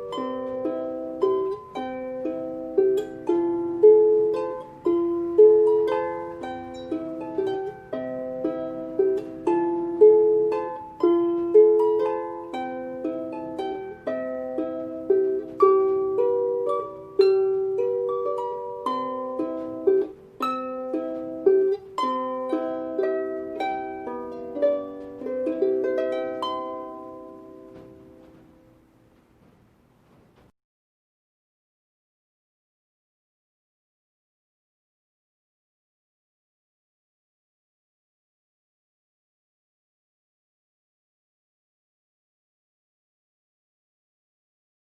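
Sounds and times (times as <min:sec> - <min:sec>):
harp playing slow melody: 0:00.0 - 0:28.8.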